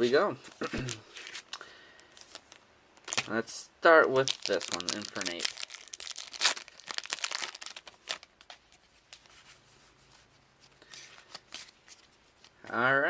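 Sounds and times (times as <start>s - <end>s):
foil wrapper crinkling and tearing: 0.8s - 3.3s, 4.0s - 9.3s.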